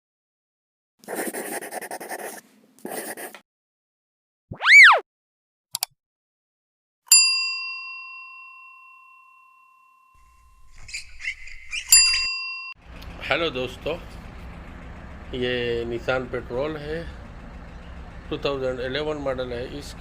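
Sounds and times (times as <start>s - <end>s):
quick clicks: 5.7s - 5.9s
bell-like ding: 7.1s - 10.3s.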